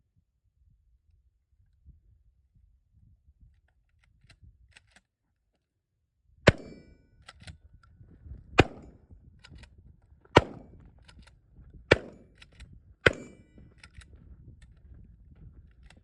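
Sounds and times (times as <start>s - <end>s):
shotgun shots: 6.5s - 6.9s, 8.6s - 9.0s, 10.4s - 10.8s, 11.9s - 12.4s, 13.0s - 13.6s.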